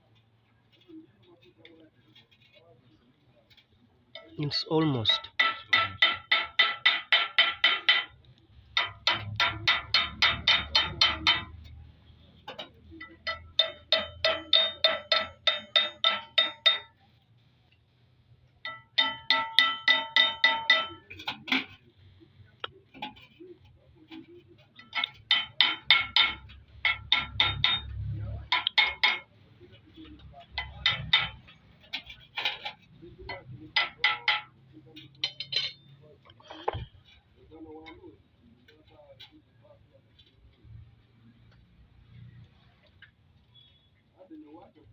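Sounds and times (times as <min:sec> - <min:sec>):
hammer tapping on metal: 0:05.1 - 0:11.8, 0:12.5 - 0:17.0, 0:18.6 - 0:21.7, 0:24.7 - 0:29.3, 0:29.9 - 0:35.9.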